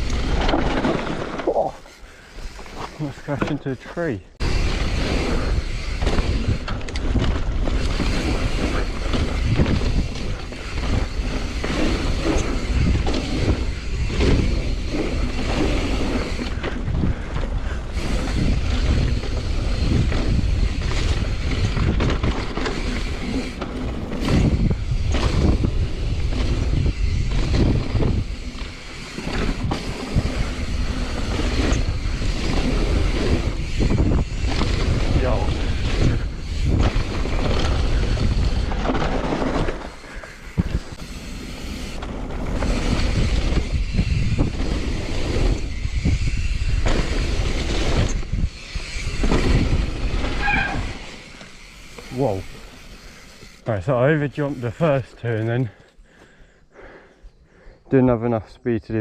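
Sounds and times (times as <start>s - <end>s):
bike knocking and rattling: 0.0s - 3.8s, 4.4s - 56.0s
tyres rolling on dirt trail: 0.0s - 59.0s
wind rushing over microphone: 4.4s - 51.1s.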